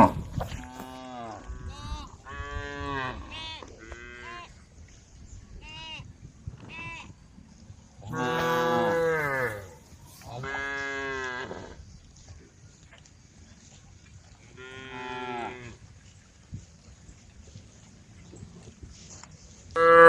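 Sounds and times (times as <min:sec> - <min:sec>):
cows mooing: 0:08.1 - 0:11.8, 0:19.8 - 0:20.0.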